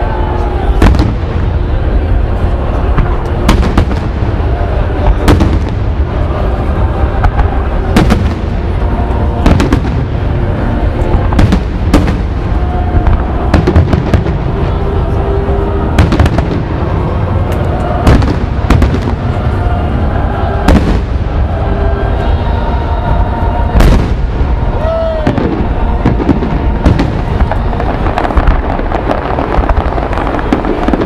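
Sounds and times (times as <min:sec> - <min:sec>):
fireworks bangs and crackling: 0:00.0 - 0:31.0
low rumble of booms: 0:00.7 - 0:22.2.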